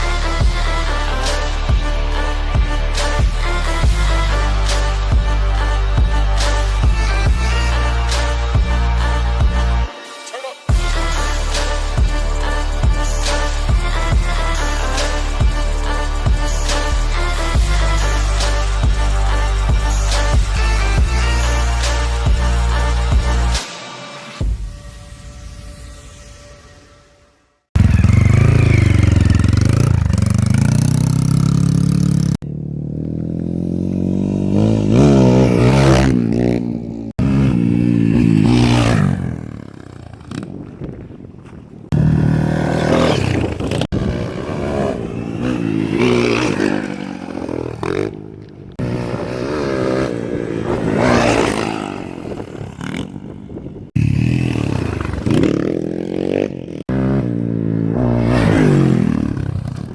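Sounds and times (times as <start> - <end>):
dirt bike engines revving: 0.0 - 9.8, 27.8 - 59.9.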